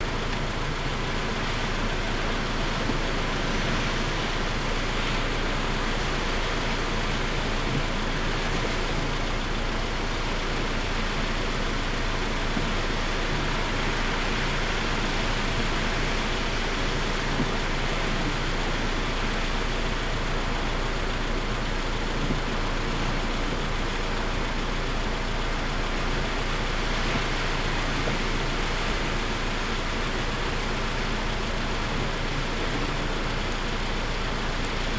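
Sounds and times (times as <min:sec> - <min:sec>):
heavy surf: 0:21.2 - 0:34.9.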